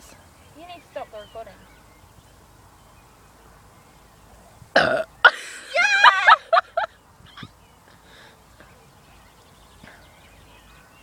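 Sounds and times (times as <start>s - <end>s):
girl burping: 4.8s - 5.1s.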